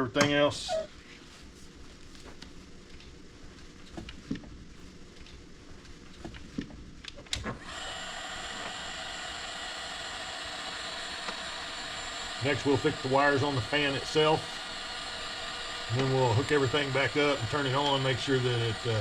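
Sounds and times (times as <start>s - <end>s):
heat gun whirring hiss: 7.6s - 19.0s.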